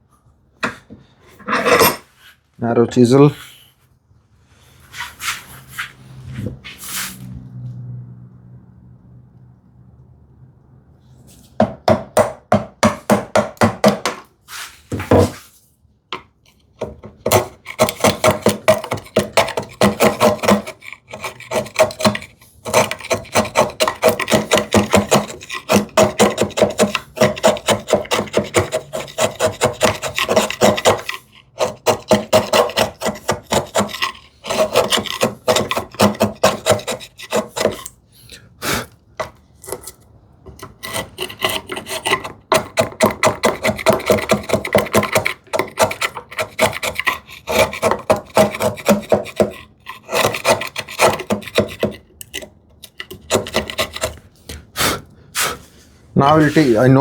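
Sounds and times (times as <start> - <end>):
chisel scraping wood: 16.5 - 38.0, 39.2 - 54.6, 56.3 - 57.0.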